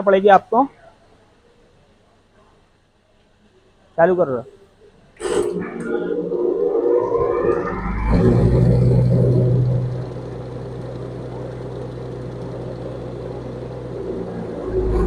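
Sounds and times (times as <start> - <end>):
grinder machine humming: 5.2 - 15.0.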